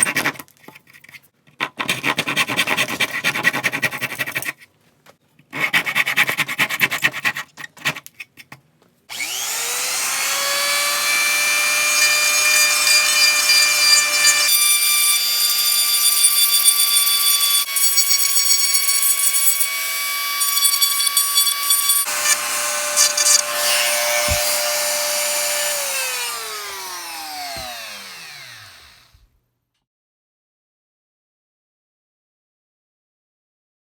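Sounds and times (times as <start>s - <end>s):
power tool cutting wood: 9.1s - 29.3s
scratchy rubbing on wood: 17.4s - 25.6s.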